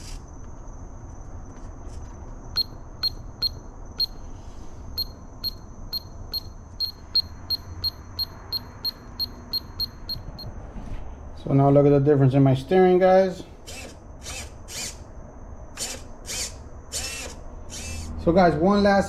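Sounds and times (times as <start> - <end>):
transmitter button beeps: 5.0 - 10.5.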